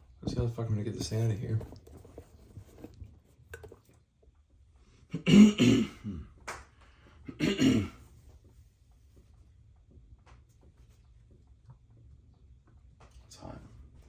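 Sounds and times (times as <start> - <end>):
man clearing his throat: 5.1 - 6.4, 7.3 - 8.1.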